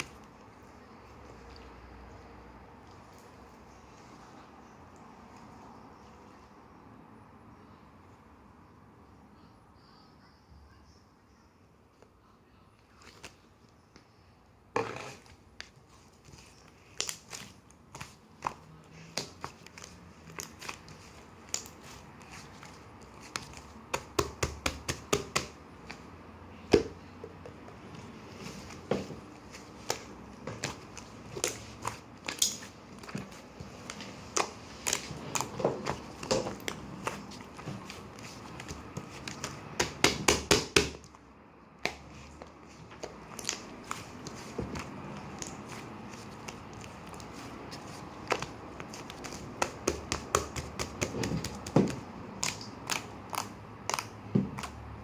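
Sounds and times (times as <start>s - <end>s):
crinkling: 42.0s - 54.8s.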